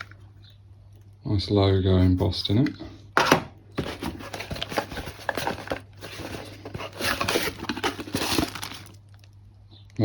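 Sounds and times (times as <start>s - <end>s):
packaging rustling and crinkling: 3.8s - 9.3s.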